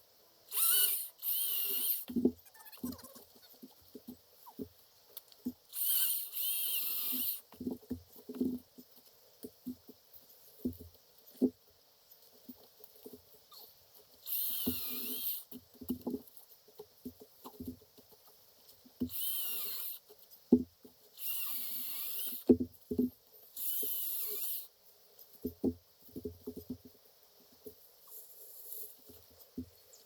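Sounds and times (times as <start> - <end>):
chainsaw cutting: 0.5 - 2.2, 5.7 - 7.4, 14.2 - 15.5.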